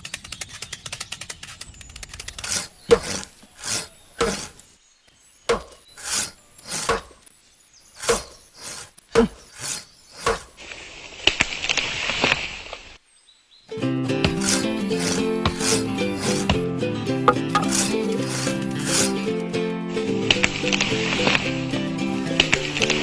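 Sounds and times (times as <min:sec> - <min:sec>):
saw cutting wood: 0:02.2 - 0:04.7, 0:05.9 - 0:07.2, 0:08.0 - 0:10.5, 0:14.2 - 0:19.3.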